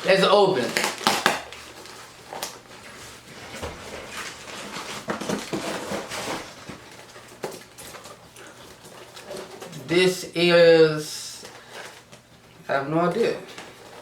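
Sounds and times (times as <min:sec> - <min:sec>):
box rustling and scraping: 0:01.6 - 0:09.9.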